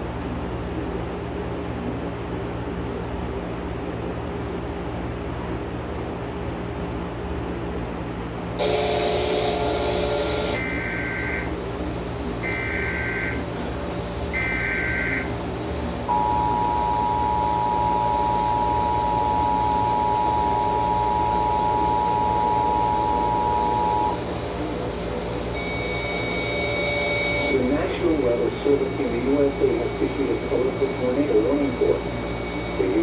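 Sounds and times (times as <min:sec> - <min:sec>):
screeching data bursts: 0:08.6 - 0:11.6, 0:12.4 - 0:13.4, 0:14.4 - 0:15.4, 0:25.4 - 0:33.0
steady dual tone alert signal: 0:08.6 - 0:11.6, 0:12.4 - 0:13.5, 0:14.3 - 0:33.0
noisy burst: 0:08.6 - 0:33.0.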